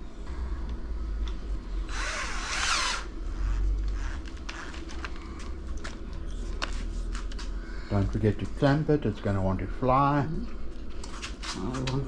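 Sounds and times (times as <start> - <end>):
electric drill boring into wood: 1.9 - 4.9.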